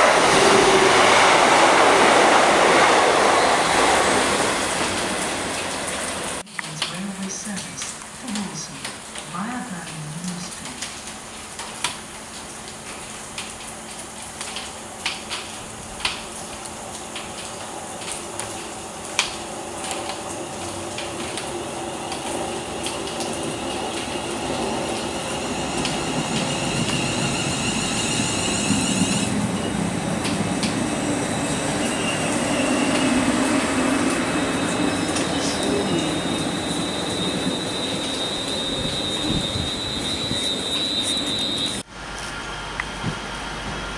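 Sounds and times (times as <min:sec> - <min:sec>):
train approaching on rails: 0:00.0 - 0:09.1, 0:14.8 - 0:43.9
high whine: 0:22.1 - 0:43.9.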